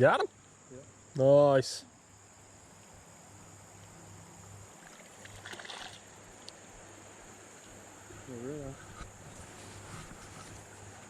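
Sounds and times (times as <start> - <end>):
creek hissing: 0.0 - 11.0
splashy rustle: 4.8 - 6.2.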